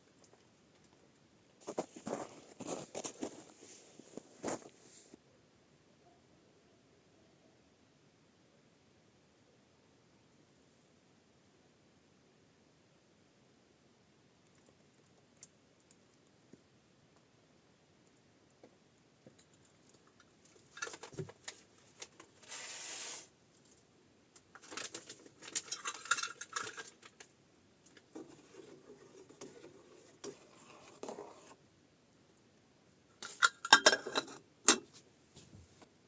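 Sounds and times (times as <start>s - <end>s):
steady hiss: 22.4s - 23.4s
dishes and utensils clinking: 33.2s - 34.8s.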